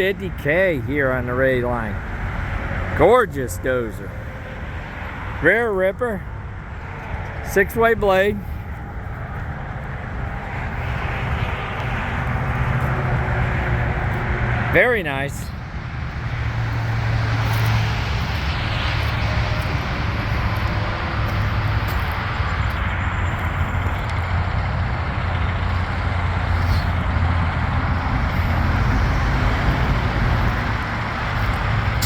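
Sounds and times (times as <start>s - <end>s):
diesel engine running: 8.2s - 32.0s.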